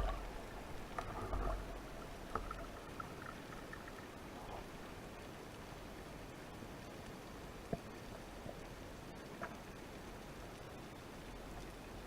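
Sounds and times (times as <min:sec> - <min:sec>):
water splashes: 0:00.0 - 0:06.1
faint underwater hiss: 0:00.0 - 0:12.0.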